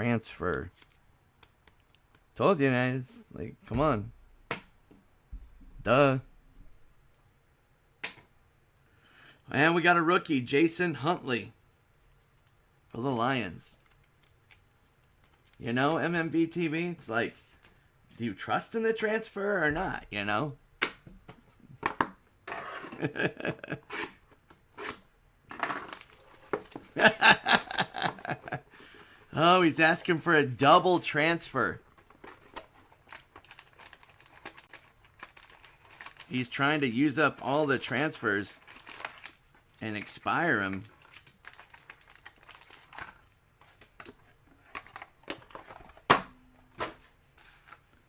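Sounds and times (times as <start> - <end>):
cards rustling and clicking: 0.3 - 2.4, 13.8 - 16.2, 25.8 - 46.2.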